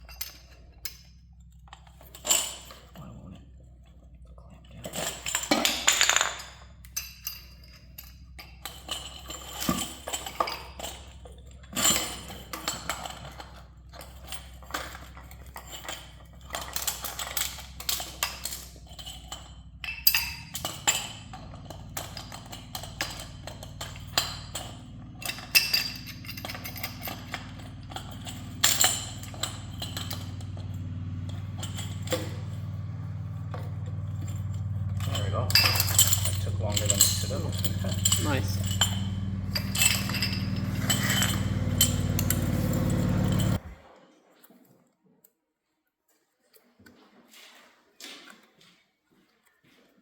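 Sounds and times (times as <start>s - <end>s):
metallic clinks of tools: 0.0s - 3.0s, 4.8s - 43.8s
low hum: 16.2s - 43.8s.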